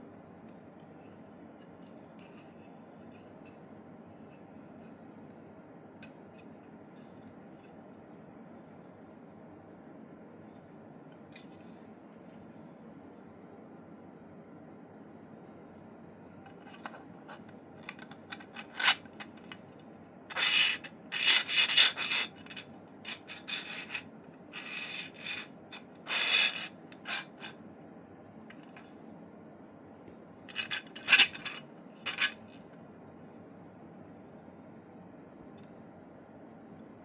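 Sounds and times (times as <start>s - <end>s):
plastic scraping against plastic: 20.3s - 24.0s, 24.6s - 25.5s, 26.1s - 27.5s, 30.5s - 32.4s.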